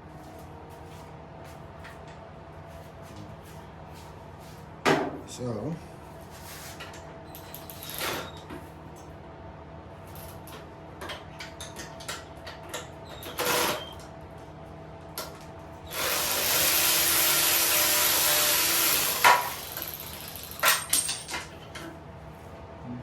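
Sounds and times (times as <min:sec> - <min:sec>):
handheld power tool running: 0:13.3 - 0:13.8, 0:15.9 - 0:20.8
clinks of parts and tools: 0:19.4 - 0:21.9.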